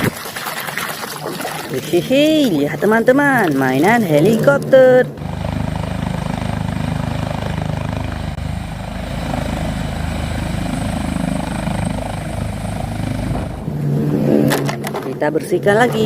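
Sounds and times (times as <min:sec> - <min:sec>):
helicopter rotor chop: 0:01.0 - 0:16.0
low engine drone: 0:01.7 - 0:16.0.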